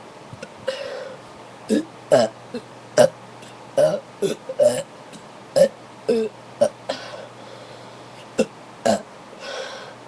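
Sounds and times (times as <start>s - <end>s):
person burping: 1.7s - 3.2s, 3.8s - 4.9s, 5.6s - 7.2s, 8.4s - 9.1s.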